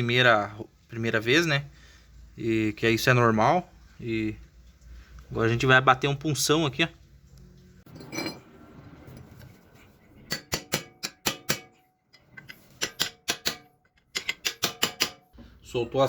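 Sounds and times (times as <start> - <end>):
hammer tapping metal punch: 10.3 - 15.3.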